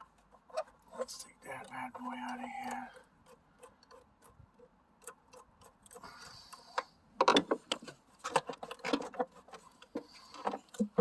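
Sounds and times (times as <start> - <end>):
faint ticking: 0.0 - 6.9.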